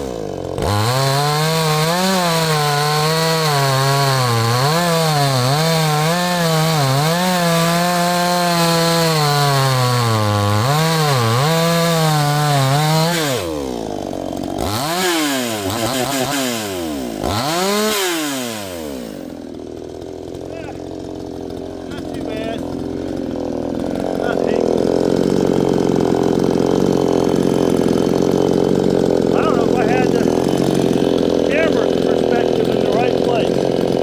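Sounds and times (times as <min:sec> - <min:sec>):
chainsaw cutting wood: 0:00.0 - 0:34.0.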